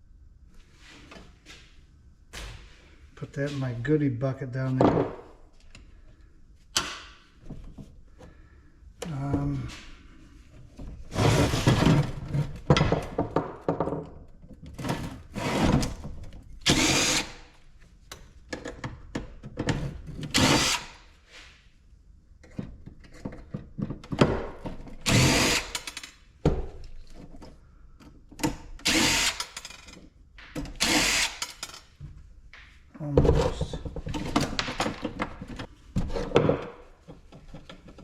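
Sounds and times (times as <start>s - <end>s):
power drill bursts: 16.7s - 17.4s, 20.3s - 21.0s, 25.1s - 25.9s, 28.8s - 29.6s, 30.8s - 31.6s.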